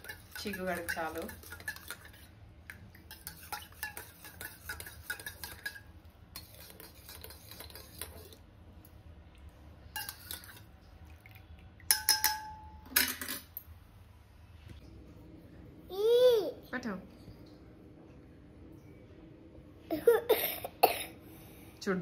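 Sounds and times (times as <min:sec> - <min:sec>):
metal spoon clinking against cups: 0:00.0 - 0:02.2, 0:02.9 - 0:08.2, 0:10.0 - 0:10.6, 0:11.9 - 0:13.6.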